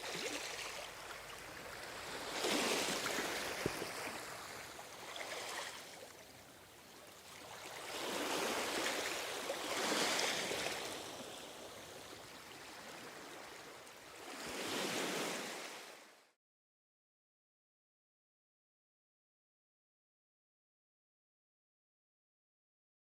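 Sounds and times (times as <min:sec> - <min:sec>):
ocean waves washing onto shore: 0:00.0 - 0:06.3, 0:07.0 - 0:16.1.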